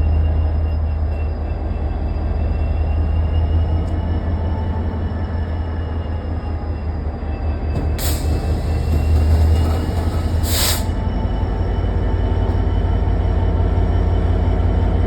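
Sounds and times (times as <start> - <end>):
freight train rumbling: 0.0 - 15.0
short air hisses: 9.9 - 11.0.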